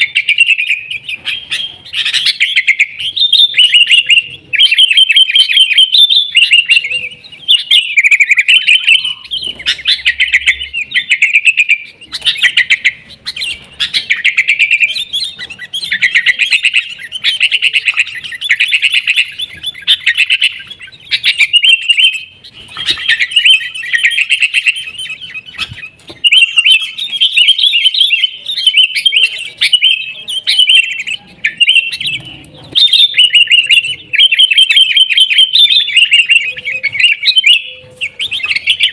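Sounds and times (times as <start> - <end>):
bulbuls chattering and calling: 0.0 - 38.9.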